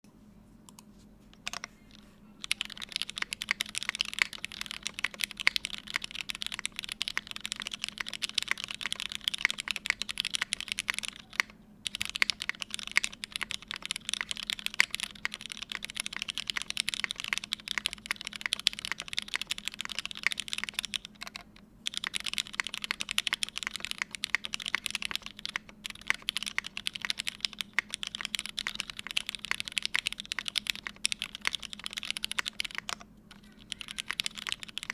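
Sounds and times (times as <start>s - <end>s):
fast typing on mechanical keyboard: 1.4s - 34.9s.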